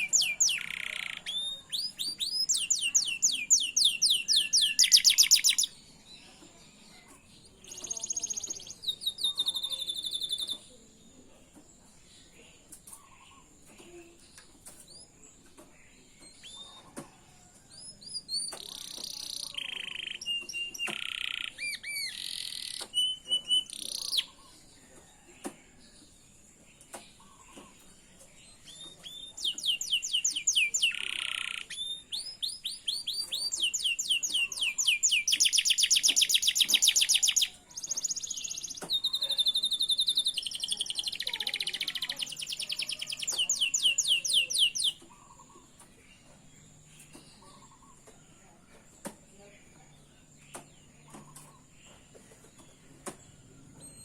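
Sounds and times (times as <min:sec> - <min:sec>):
canary singing: 0:00.0 - 0:10.8, 0:17.8 - 0:24.6, 0:26.9 - 0:48.3.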